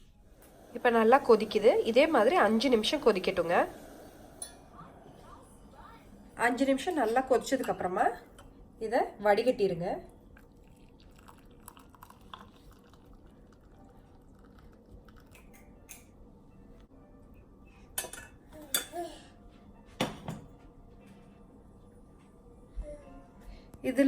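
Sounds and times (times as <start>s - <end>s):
kitchenware clinking: 4.4s - 4.8s, 6.7s - 8.5s, 15.2s - 16.2s, 18.0s - 19.0s, 20.0s - 20.6s.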